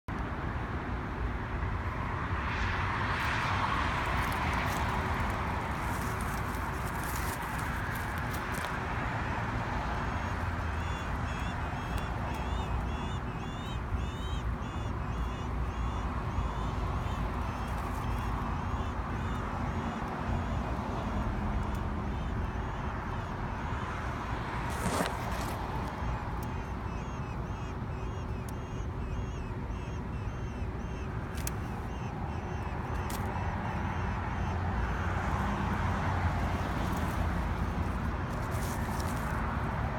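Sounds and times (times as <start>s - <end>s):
rumbling background noise: 0.1s - 39.9s
baby bird chirping: 9.9s - 35.6s
mockingbird call notes: 10.0s - 35.7s.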